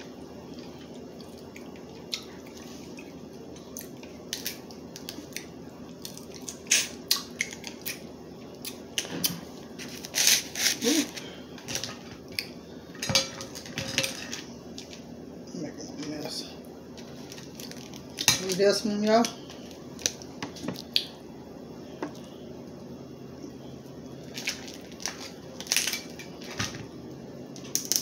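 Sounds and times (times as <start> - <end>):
crab shells cracking: 27.6 - 28.0.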